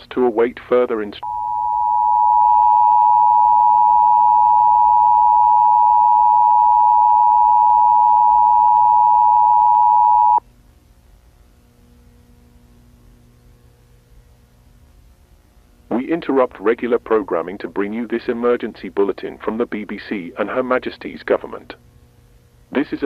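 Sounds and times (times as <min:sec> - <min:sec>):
faint low hum: 0:00.0 - 0:23.0
loud steady attention tone: 0:01.2 - 0:10.4.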